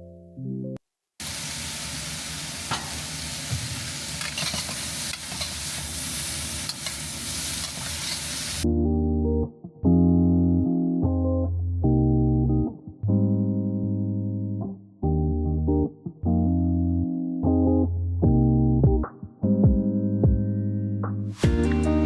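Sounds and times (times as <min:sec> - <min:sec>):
music: 0:00.0 - 0:00.8, 0:08.6 - 0:22.0
food sizzling in a pan: 0:01.2 - 0:08.6.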